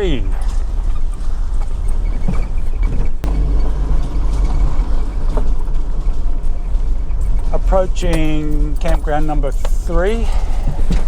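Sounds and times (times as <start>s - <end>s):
car engine and tyres rumbling: 0.0s - 11.0s.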